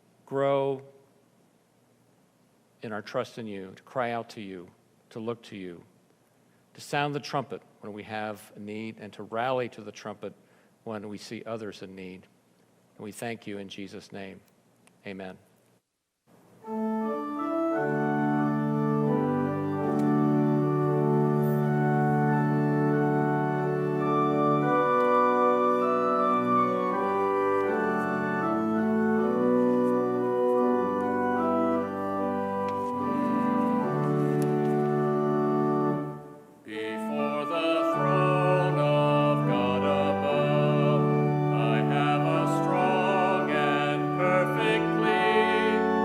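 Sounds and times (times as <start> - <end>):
church organ chords: 16.6 - 46.0
people singing a hymn: 36.7 - 46.0.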